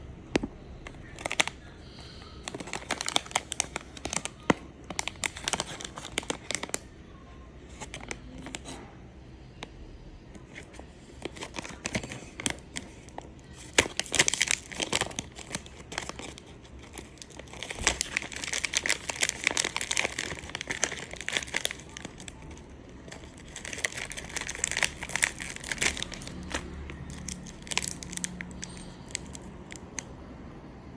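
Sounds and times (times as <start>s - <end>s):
candy wrappers crinkling: 0.4s - 6.9s, 7.7s - 8.8s, 10.4s - 30.1s.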